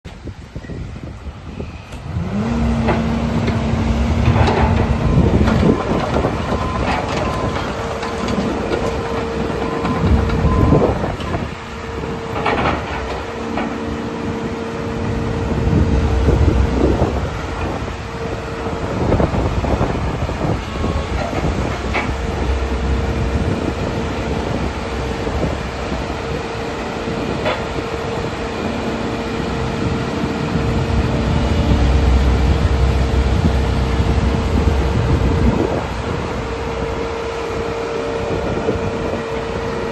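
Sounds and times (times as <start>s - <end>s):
excavator diesel engine running: 0.2s - 39.9s
hydraulic whine: 0.5s - 39.9s.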